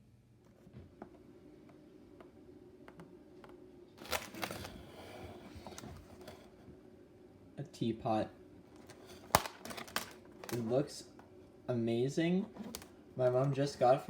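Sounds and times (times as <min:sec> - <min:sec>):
box rustling and crinkling: 0:04.0 - 0:06.5, 0:08.8 - 0:10.8.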